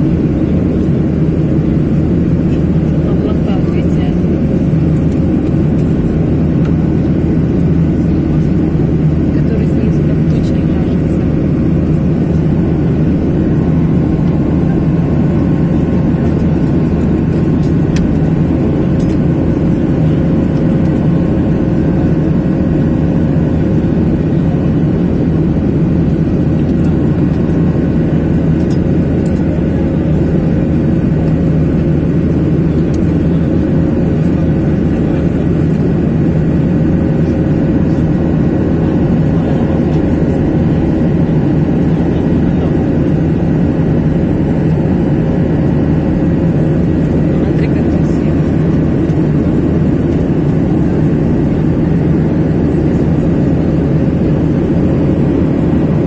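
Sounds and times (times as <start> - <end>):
airliner cabin engine noise: 0.0 - 56.0.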